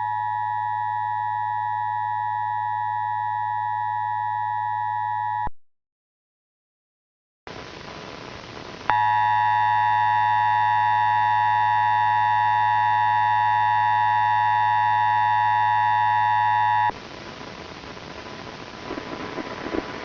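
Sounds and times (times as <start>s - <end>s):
steady hiss: 17.0s - 20.0s.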